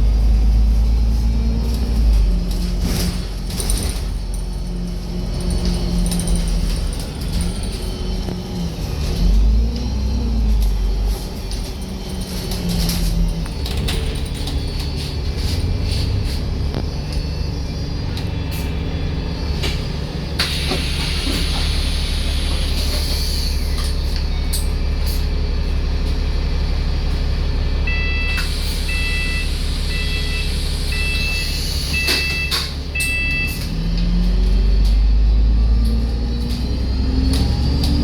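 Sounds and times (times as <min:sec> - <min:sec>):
bus engine idling: 0:10.2 - 0:37.4
door warning beeps: 0:27.9 - 0:33.7.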